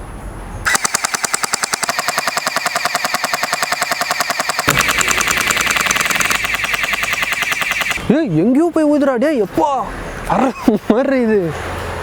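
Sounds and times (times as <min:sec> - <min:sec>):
toy blaster firing rapid clacks: 0:00.7 - 0:08.0.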